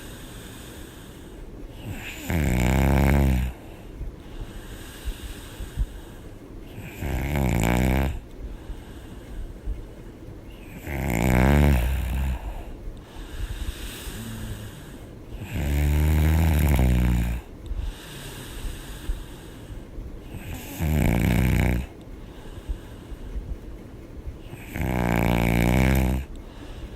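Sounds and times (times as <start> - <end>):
quiet breathing: 0.0 - 26.9
woman snoring loudly: 1.7 - 3.7, 6.7 - 8.2, 10.5 - 12.7, 13.6 - 18.9, 20.2 - 22.0, 24.5 - 26.4.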